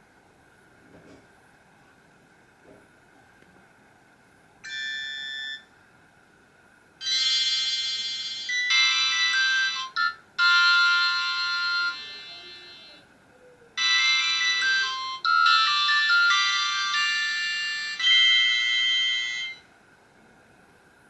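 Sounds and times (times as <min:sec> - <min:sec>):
tinny polyphonic ringtone: 0:04.6 - 0:05.7, 0:07.0 - 0:13.0, 0:13.8 - 0:19.6.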